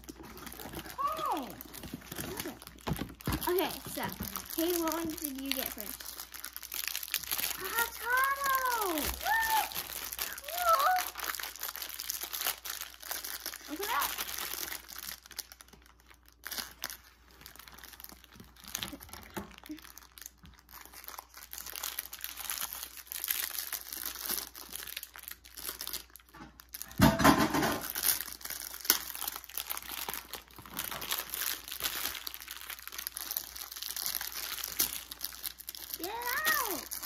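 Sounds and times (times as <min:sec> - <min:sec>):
packaging crinkling and rustling: 0:00.0 - 0:37.0.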